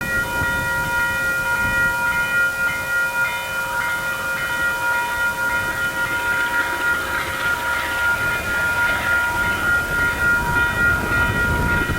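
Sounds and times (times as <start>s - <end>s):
diesel train rumble: 0.0s - 11.9s
steady high-pitched tones: 0.0s - 11.9s.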